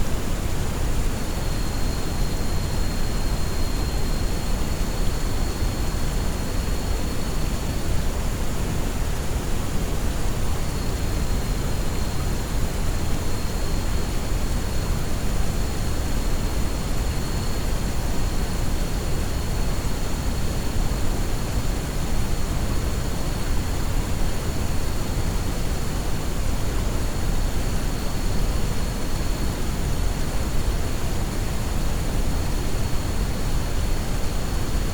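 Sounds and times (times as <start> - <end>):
low white noise hiss: 0.0 - 34.9.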